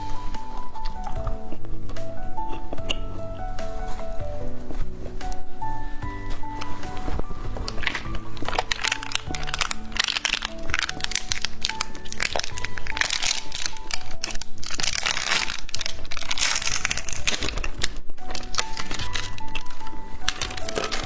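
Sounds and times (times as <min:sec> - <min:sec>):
background music: 0:00.0 - 0:21.0
plastic wrapper crinkling: 0:06.2 - 0:21.0.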